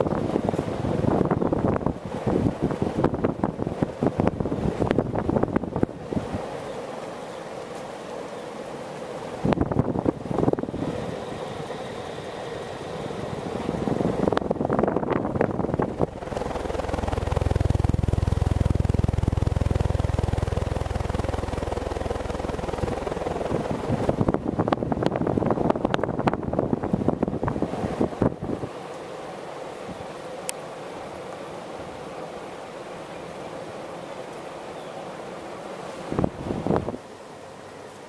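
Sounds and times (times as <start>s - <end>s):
wind noise on microphone: 0.0s - 6.6s, 9.4s - 12.3s, 12.9s - 28.8s, 36.0s - 37.1s
crackles: 13.6s - 26.2s
deep rumble: 13.8s - 27.5s.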